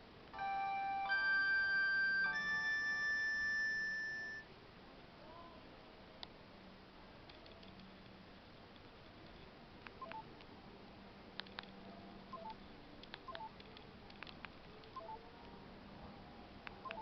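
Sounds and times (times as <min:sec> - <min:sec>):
faint mobile phone beeps: 0:00.4 - 0:04.5, 0:10.0 - 0:10.3, 0:12.3 - 0:12.6, 0:13.3 - 0:13.6, 0:14.9 - 0:15.3, 0:16.8 - 0:17.0.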